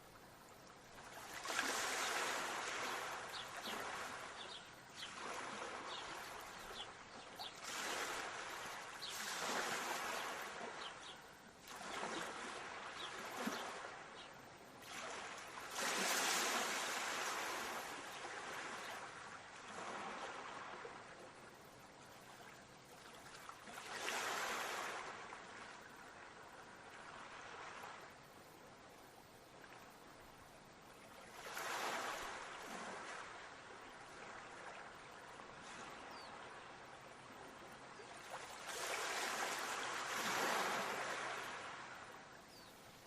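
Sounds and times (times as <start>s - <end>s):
sea waves washing onto shore: 1.1s - 14.2s, 14.8s - 21.1s, 38.2s - 42.2s.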